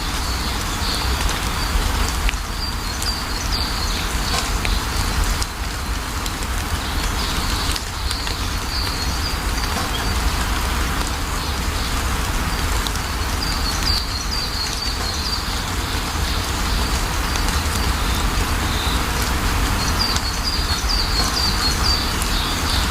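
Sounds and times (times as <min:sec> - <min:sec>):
steady rain falling: 0:00.0 - 0:22.9
bird chirping: 0:19.8 - 0:22.9.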